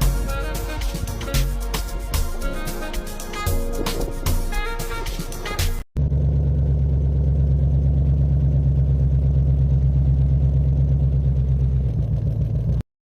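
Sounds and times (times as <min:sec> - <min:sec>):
car engine idling: 0:06.0 - 0:12.8.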